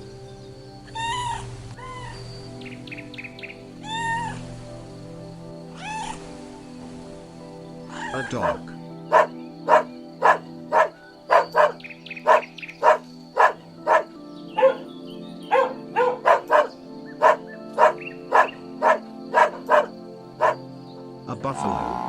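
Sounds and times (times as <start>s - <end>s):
background music: 0.0s - 22.0s
dog barking: 8.4s - 14.8s, 15.5s - 20.6s.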